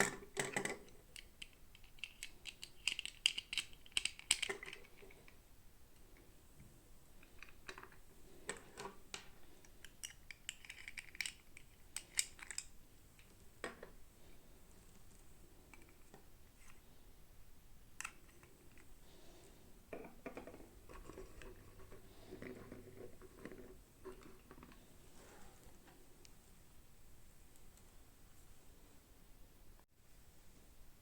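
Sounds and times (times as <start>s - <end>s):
plastic pieces clicking: 0.0s - 5.2s, 7.2s - 13.8s.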